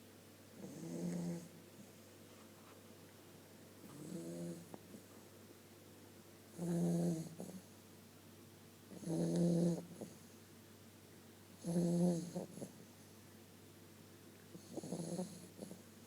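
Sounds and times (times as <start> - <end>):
puppy snoring: 0.6 - 1.6, 3.8 - 4.7, 6.5 - 7.8, 8.9 - 10.4, 11.6 - 12.9, 14.5 - 16.0.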